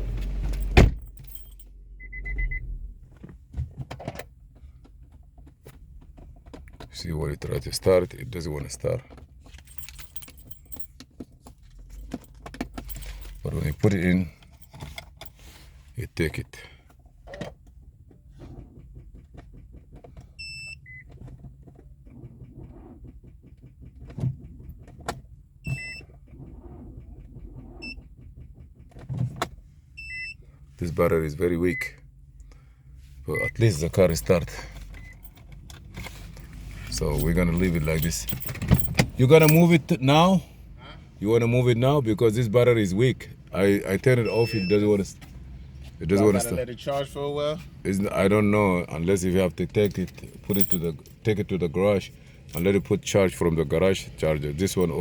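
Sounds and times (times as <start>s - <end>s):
keys jingling: 0.3s - 1.7s, 8.6s - 15.5s, 33.4s - 40.3s, 49.5s - 53.1s, 54.4s - 55.0s
car warning chime beeps: 0.5s - 2.8s, 20.4s - 21.2s, 25.6s - 26.1s, 27.4s - 28.1s, 29.9s - 30.6s, 31.4s - 32.1s, 33.3s - 35.4s, 43.8s - 45.2s.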